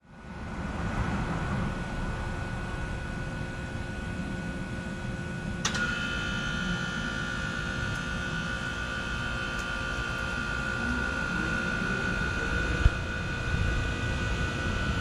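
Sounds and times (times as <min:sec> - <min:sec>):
heat pump compressor and fan humming: 0:00.0 - 0:15.0
sharp click: 0:05.6 - 0:06.0.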